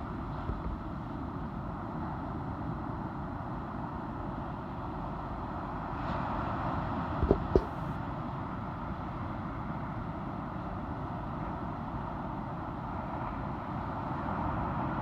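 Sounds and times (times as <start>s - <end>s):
sharp knocks: 7.2s - 7.8s.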